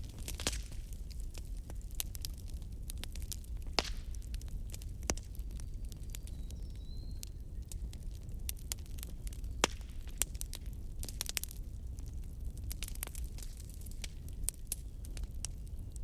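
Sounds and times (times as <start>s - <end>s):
wood fire crackling: 0.0s - 16.0s.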